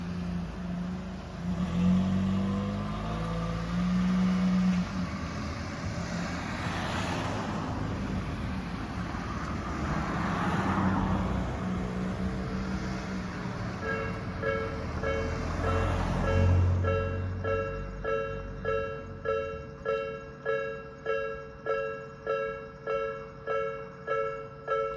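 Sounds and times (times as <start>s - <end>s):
motor vehicles passing: 0.0s - 19.2s
level crossing warning bell: 13.5s - 24.9s.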